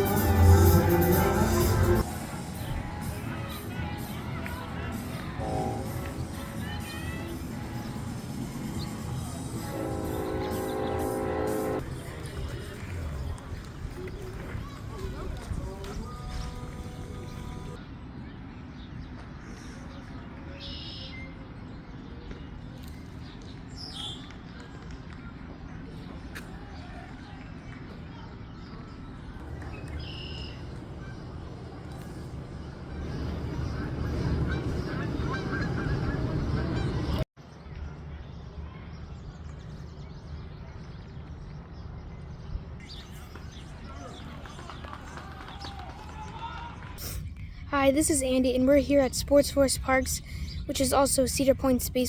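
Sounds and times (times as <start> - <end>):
birds honking: 9.5 - 11.8, 33.0 - 37.2
low outdoor rumble: 24.4 - 52.0.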